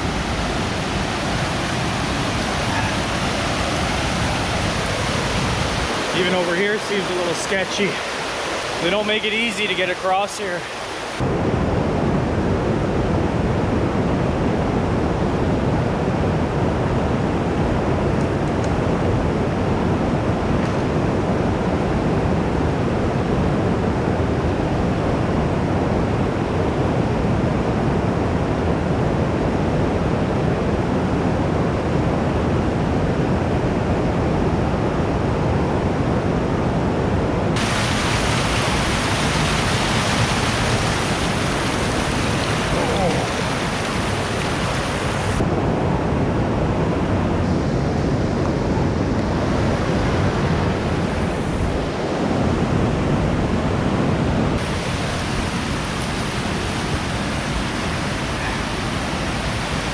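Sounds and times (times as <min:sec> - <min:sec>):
creek water rushing over rocks: 0:00.0 - 0:11.2, 0:37.6 - 0:45.5, 0:54.6 - 0:59.9.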